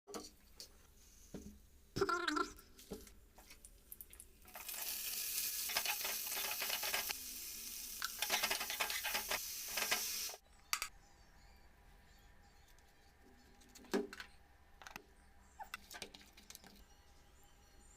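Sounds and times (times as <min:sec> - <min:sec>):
food sizzling in a pan: 0:04.5 - 0:10.4
spatula scraping a pan: 0:08.2 - 0:10.1.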